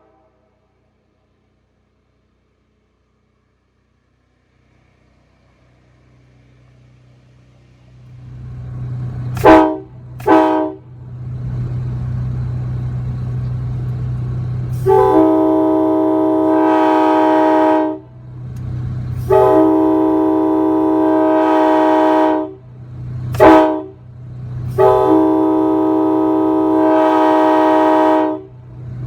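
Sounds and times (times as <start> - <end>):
train horn blasts: 0.0 - 0.8, 9.4 - 11.0, 14.7 - 18.2, 19.2 - 22.7, 23.3 - 24.1, 24.7 - 28.6
steady low hum: 0.0 - 29.0.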